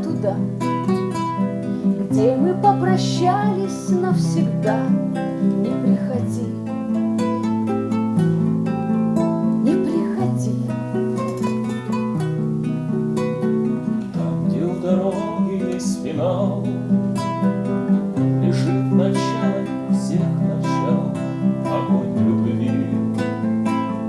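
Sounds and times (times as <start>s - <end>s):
acoustic guitar: 0.0s - 24.0s
person singing: 2.0s - 6.7s, 9.6s - 10.8s, 14.1s - 16.8s, 18.4s - 23.2s.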